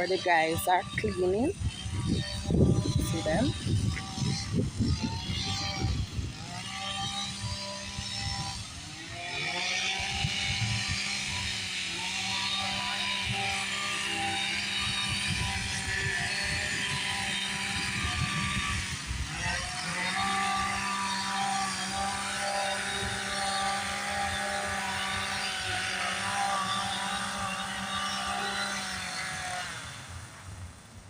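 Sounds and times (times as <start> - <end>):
leaf blower engine running: 0.0 - 31.0.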